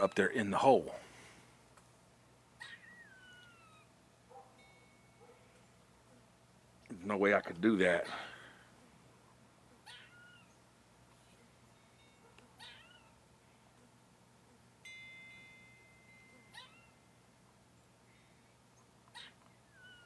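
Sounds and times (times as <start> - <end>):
squirrel calls: 2.6 - 3.9, 9.7 - 10.6, 16.4 - 17.0, 18.8 - 20.0
steady ringing tone: 4.6 - 5.3, 11.7 - 12.2, 14.8 - 17.1.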